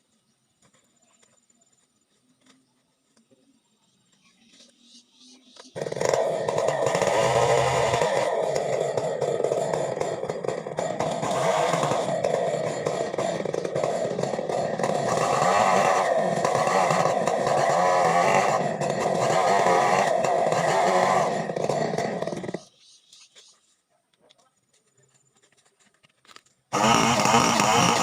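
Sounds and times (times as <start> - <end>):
chainsaw engine revving: 5.7 - 22.8, 26.7 - 28.0.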